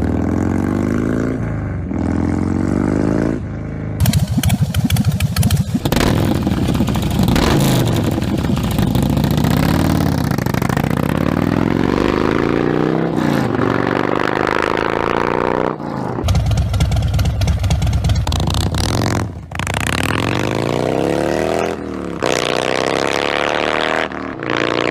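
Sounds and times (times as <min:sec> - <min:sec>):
motorcycle engine revving: 0:00.0 - 0:24.9
motorcycle engine idling: 0:03.4 - 0:11.3, 0:16.2 - 0:19.7.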